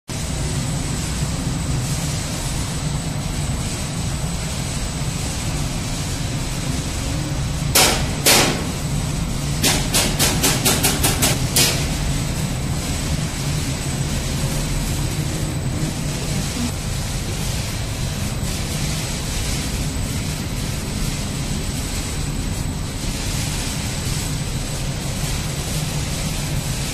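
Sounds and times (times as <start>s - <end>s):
machinery humming: 0.1s - 26.9s
loud sharp knocks: 7.7s - 8.8s, 9.6s - 11.9s.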